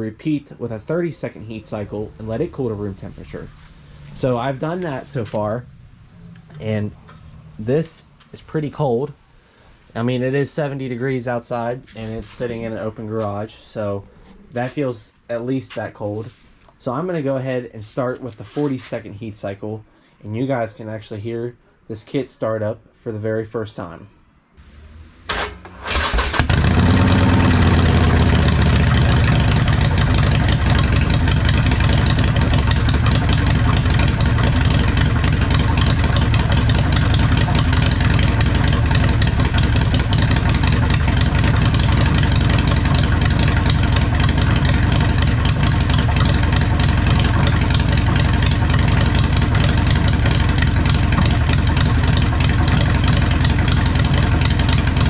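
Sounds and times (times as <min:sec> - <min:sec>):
motorcycle engine starting: 0:01.4 - 0:08.2, 0:24.6 - 0:55.0
motorcycle engine idling: 0:24.6 - 0:55.0.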